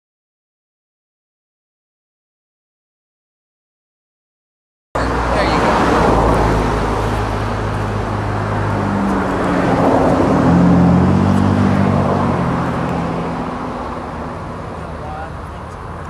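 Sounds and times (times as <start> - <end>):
road traffic passing: 5.0 - 16.0.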